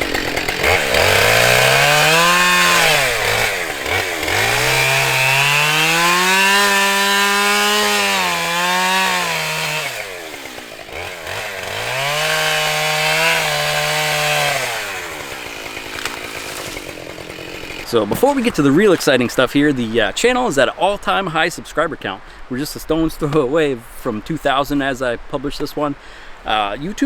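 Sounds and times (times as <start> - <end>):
chainsaw running at high revs: 0.0 - 19.2.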